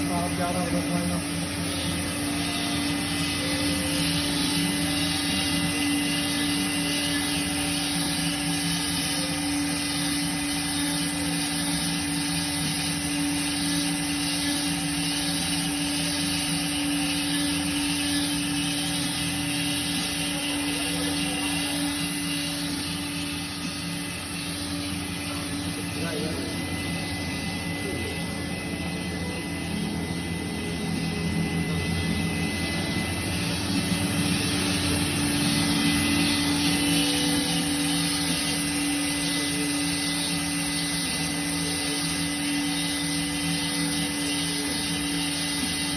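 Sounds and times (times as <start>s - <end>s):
router machine humming and whirring: 0.0s - 45.9s.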